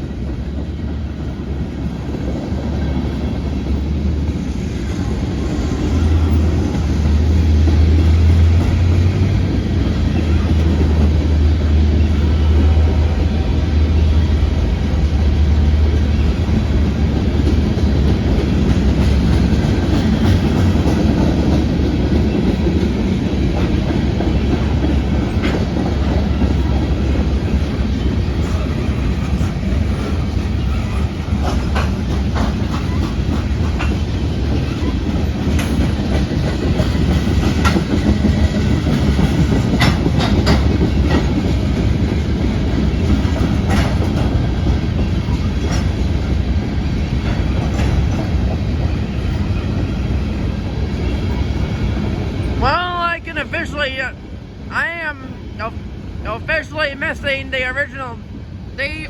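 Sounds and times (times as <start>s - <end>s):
train rumbling past: 0.0s - 59.0s
wheels clicking over rail joints: 15.2s - 52.8s.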